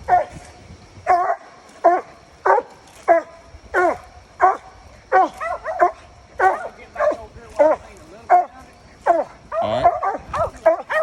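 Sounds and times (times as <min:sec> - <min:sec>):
dog barking loudly: 0:01.1 - 0:11.0.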